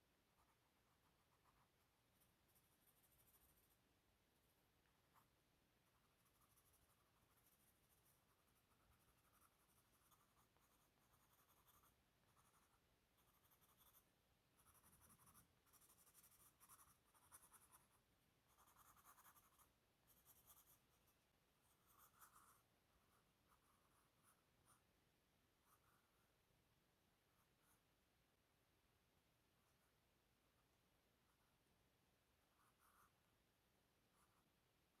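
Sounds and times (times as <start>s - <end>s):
pencil scratching on paper: 0.3s - 3.8s, 4.8s - 24.9s, 32.4s - 33.3s, 34.1s - 34.6s.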